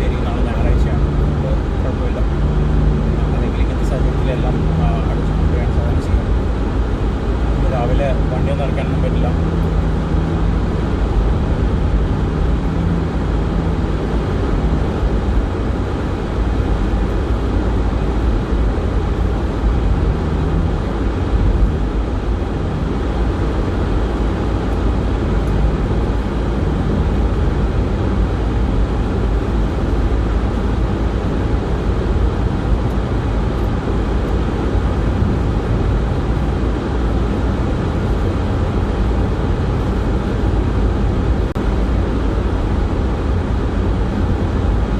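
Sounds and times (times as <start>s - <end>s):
engine and tyre rumble: 0.0s - 44.9s.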